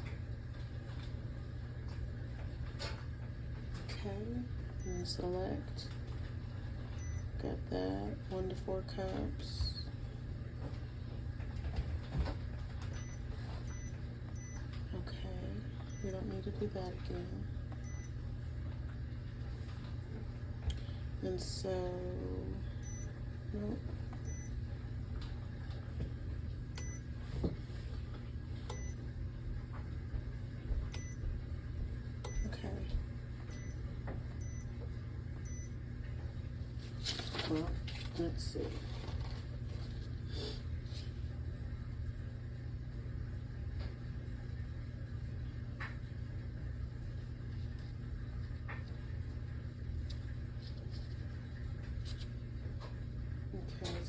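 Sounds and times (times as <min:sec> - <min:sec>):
steady low hum: 0:00.0 - 0:54.0
faint handling clicks and rustles: 0:36.6 - 0:40.2.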